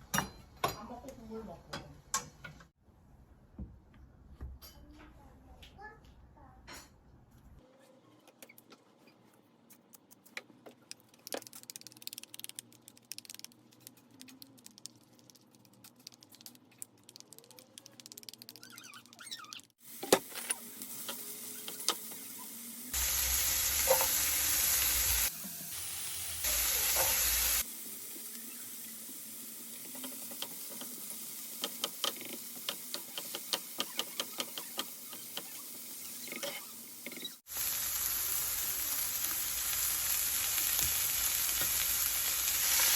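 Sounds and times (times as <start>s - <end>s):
food sizzling in a hot pan: 19.8s - 42.9s.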